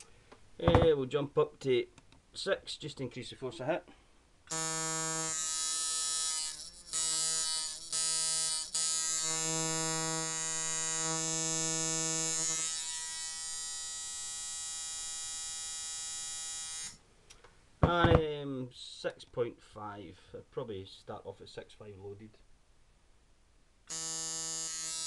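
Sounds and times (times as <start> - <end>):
tattoo machine buzzing: 4.5 - 17.0, 23.9 - 25.0.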